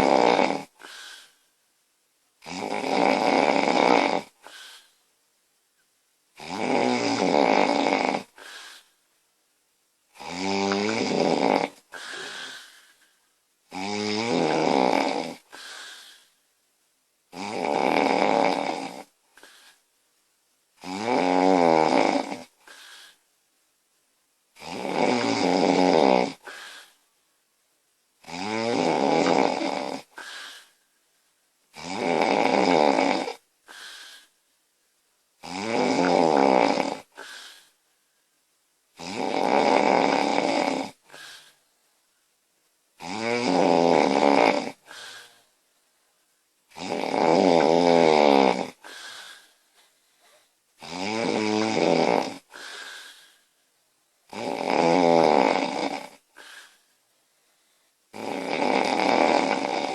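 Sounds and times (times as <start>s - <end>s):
woman snoring loudly: 0.0s - 1.2s, 2.4s - 4.9s, 6.4s - 8.8s, 10.1s - 12.8s, 13.7s - 16.2s, 17.3s - 19.1s, 20.8s - 23.2s, 24.6s - 26.9s, 28.2s - 30.7s, 31.7s - 34.3s, 35.4s - 37.6s, 39.0s - 41.5s, 43.0s - 45.4s, 46.7s - 49.4s, 50.8s - 53.3s, 54.3s - 56.8s, 58.1s - 59.9s.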